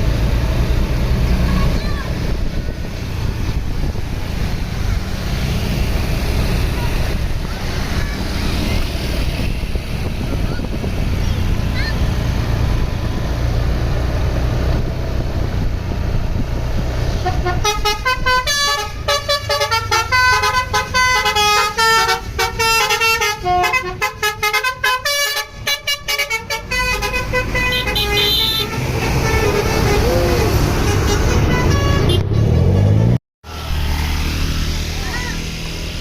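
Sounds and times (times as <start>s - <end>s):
bus horn tooting melody: 17.2s - 33.2s.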